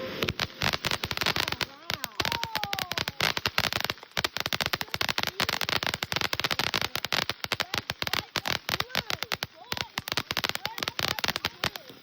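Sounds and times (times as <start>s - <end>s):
fireworks crackling: 0.0s - 12.0s.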